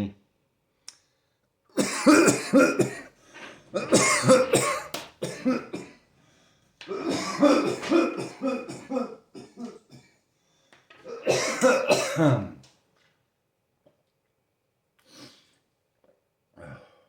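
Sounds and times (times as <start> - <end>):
person coughing: 1.8 - 3.1, 3.7 - 6.0, 6.9 - 10.1, 11.0 - 12.6.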